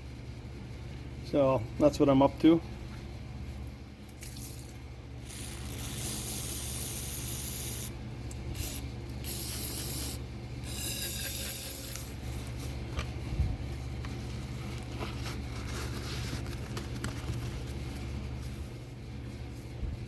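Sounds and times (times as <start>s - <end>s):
steady low hum: 0.0s - 20.0s
aerosol spray can hissing: 8.6s - 12.1s.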